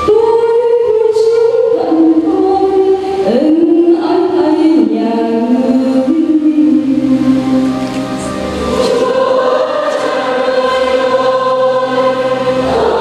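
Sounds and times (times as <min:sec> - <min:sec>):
choir singing a hymn: 0:03.9 - 0:13.0.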